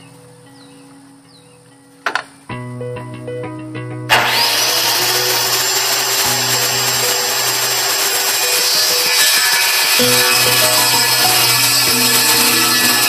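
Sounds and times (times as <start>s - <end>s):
background music: 0.0s - 13.0s
electric power tool running: 4.1s - 13.0s.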